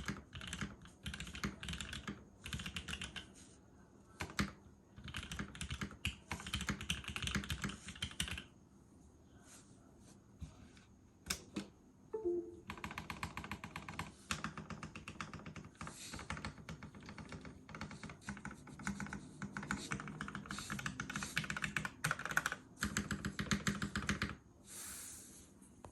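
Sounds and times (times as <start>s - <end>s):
typing on mechanical keyboard: 0.0s - 3.3s, 4.2s - 8.5s, 12.7s - 24.4s.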